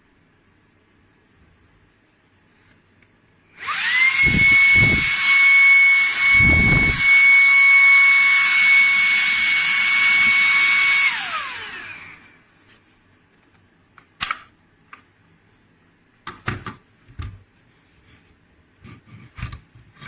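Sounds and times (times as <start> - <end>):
handheld vacuum whining: 3.6 - 12.5.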